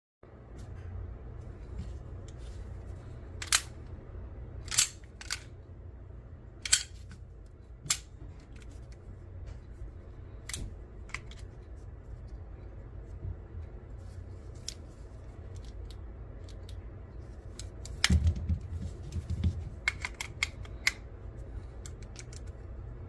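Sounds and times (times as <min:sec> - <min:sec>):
low steady hum: 0:00.2 - 0:23.0
pistol mechanism clicking: 0:04.6 - 0:05.5, 0:06.6 - 0:07.0.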